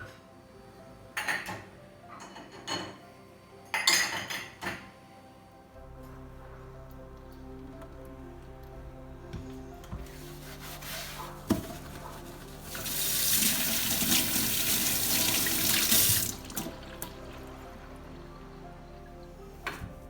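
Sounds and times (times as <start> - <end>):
tap water running into sink: 12.6 - 17.8.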